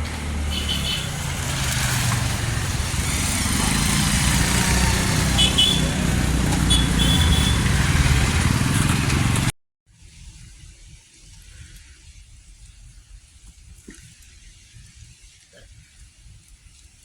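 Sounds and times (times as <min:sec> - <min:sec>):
vehicle engine running: 0:00.0 - 0:09.5
rushing air and road noise: 0:00.0 - 0:10.9.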